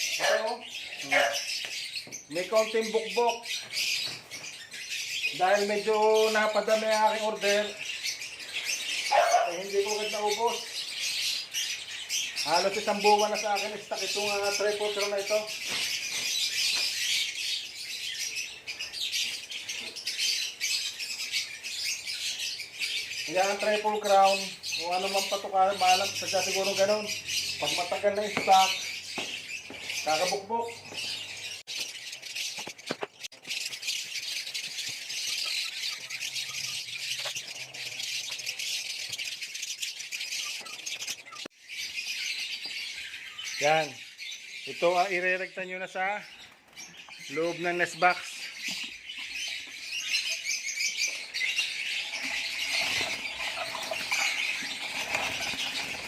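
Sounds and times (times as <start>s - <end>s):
lovebirds chattering: 0.0s - 56.0s
faint bird chirps: 46.4s - 56.0s
dry rattling and rustling: 52.0s - 56.0s.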